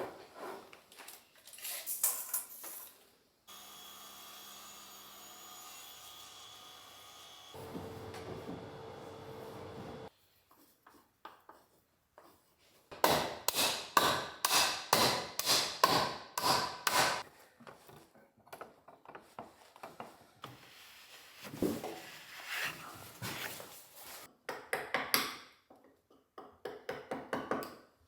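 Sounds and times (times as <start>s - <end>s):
power tool motor running: 6.7s - 10.1s
hand-tool strokes on wood: 20.4s - 24.3s.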